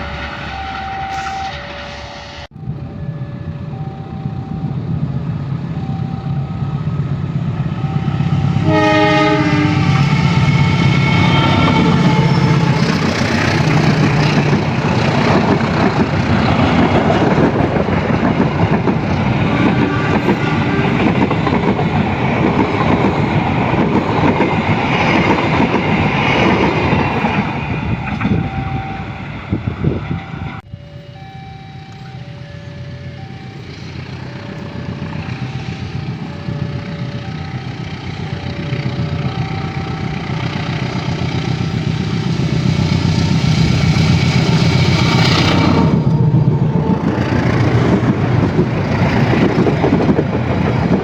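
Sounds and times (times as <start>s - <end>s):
diesel train engine hum: 0.0s - 51.0s
two-tone warning signal beeps: 0.5s - 5.0s, 5.6s - 13.8s, 28.2s - 42.5s
train horn blast: 8.3s - 14.3s, 19.4s - 21.2s
train cars clickety-clack: 8.4s - 30.6s, 33.9s - 51.0s.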